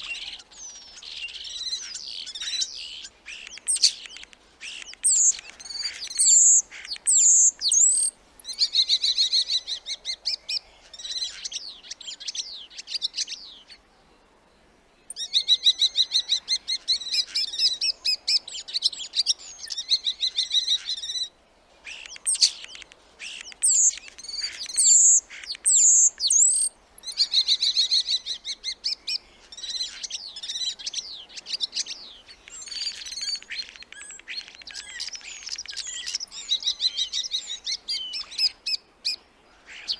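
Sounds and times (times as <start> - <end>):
starling singing: 0.0 - 10.4, 21.9 - 38.8.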